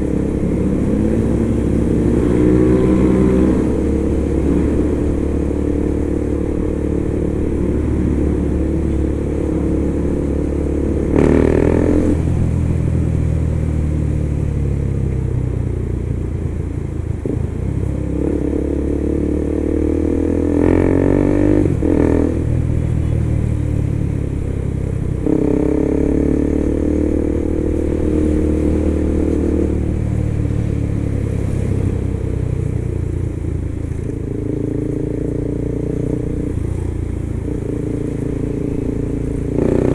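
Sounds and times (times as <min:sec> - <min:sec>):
motorcycle engine revving: 0:00.0 - 0:16.2, 0:17.1 - 0:39.9.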